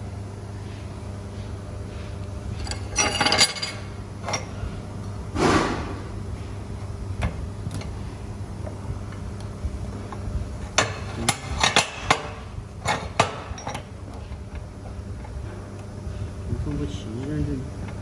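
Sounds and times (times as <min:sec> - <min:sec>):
low machine hum: 0:00.0 - 0:18.0
metal scraping: 0:05.4 - 0:06.4.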